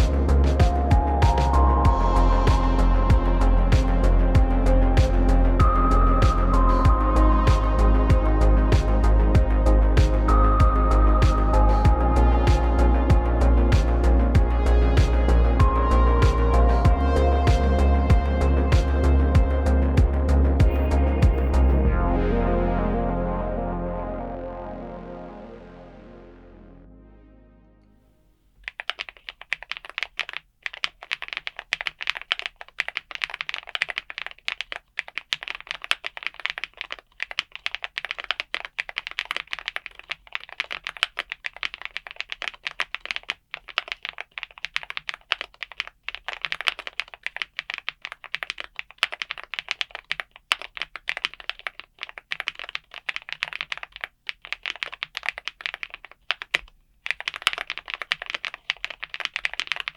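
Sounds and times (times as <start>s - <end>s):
fast typing on mechanical keyboard: 28.6s - 59.9s.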